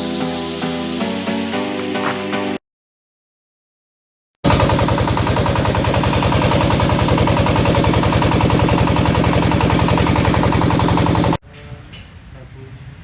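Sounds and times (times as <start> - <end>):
engine-driven pellet press running: 4.4 - 11.4.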